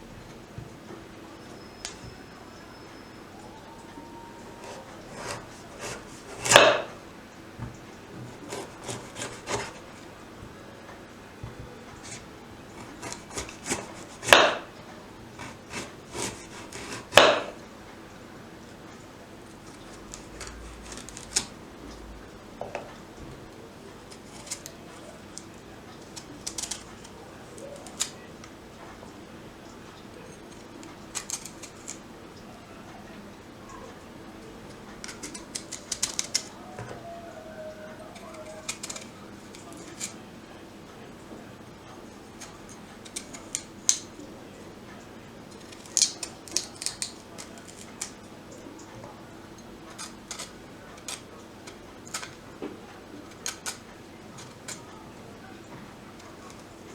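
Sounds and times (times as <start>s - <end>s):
blade scraping celeriac: 4.4s - 7.0s, 8.2s - 10.1s, 12.0s - 14.7s, 15.3s - 17.6s, 38.0s - 40.2s
utensils clicking and tapping: 4.6s - 7.0s, 7.6s - 17.6s, 23.9s - 32.1s, 34.7s - 37.0s, 37.9s - 40.2s, 41.9s - 44.2s, 45.5s - 55.0s.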